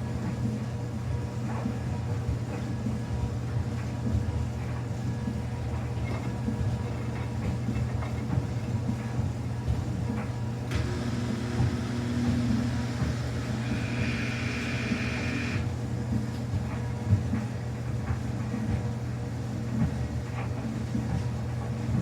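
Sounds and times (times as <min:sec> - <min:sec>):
washing machine hum and rumble: 0:00.0 - 0:22.0
hiss: 0:10.7 - 0:15.7.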